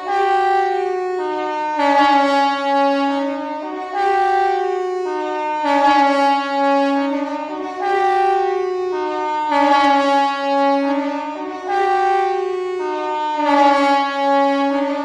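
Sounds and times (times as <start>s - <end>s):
two-tone compressed-air siren: 0.0s - 15.0s.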